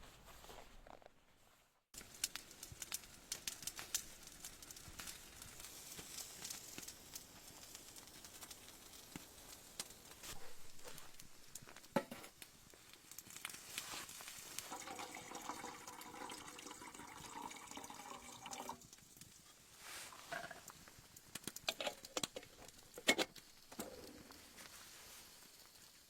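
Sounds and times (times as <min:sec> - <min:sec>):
liquid pouring into container: 0:14.6 - 0:18.9
cookware clicks and knocks: 0:23.0 - 0:23.3.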